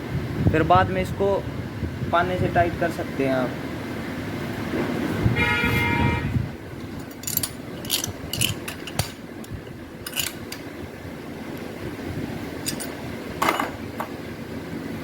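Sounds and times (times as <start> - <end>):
spanner clicking and scraping: 7.0 - 10.7, 12.6 - 13.0.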